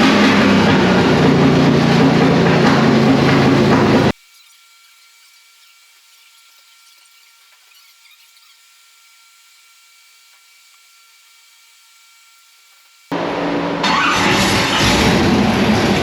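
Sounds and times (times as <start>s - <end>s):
thin high whine: 3.0s - 14.1s.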